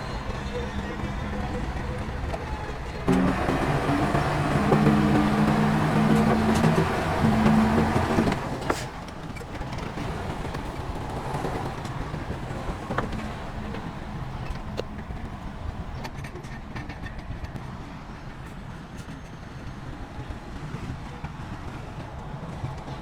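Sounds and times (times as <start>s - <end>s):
diesel machinery rumbling: 0.0s - 16.1s.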